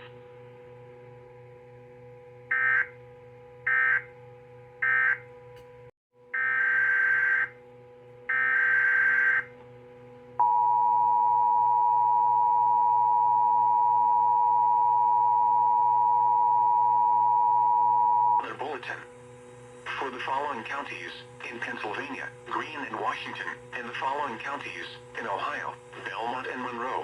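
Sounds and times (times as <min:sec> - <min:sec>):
two-tone attention signal: 0:10.4 - 0:18.4.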